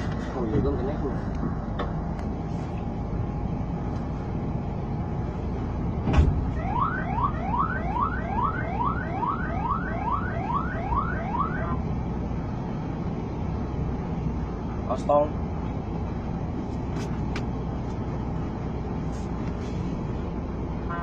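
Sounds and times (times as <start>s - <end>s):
road traffic rumble: 0.0s - 21.0s
siren horn whooping: 6.6s - 11.8s.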